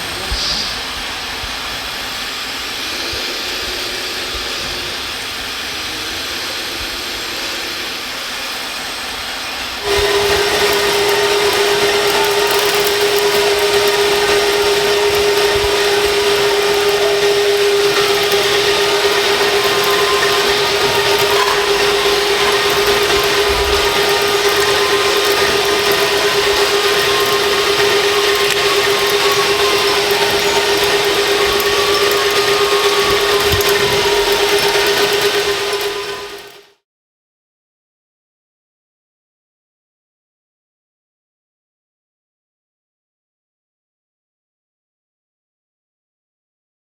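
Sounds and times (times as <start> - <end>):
small electric motor whining: 0.0 - 36.7
mechanical hum: 0.0 - 36.8.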